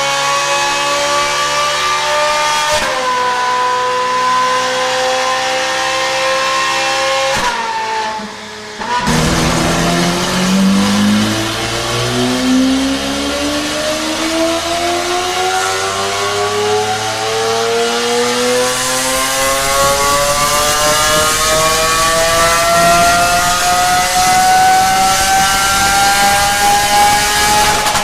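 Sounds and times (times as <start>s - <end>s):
car engine accelerating: 7.9s - 28.0s.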